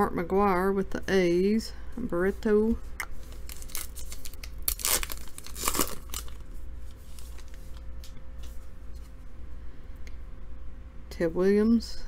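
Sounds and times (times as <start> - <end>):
card pack wrapper tearing: 3.4 - 6.5.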